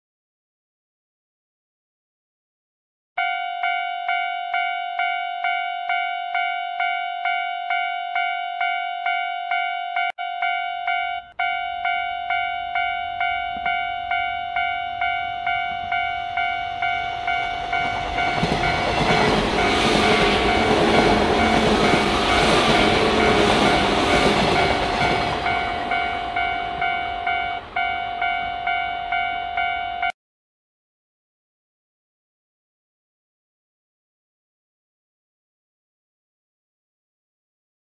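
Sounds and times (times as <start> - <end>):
level crossing bell ringing: 3.2 - 30.1
train rumble and wheel clatter: 13.3 - 29.8.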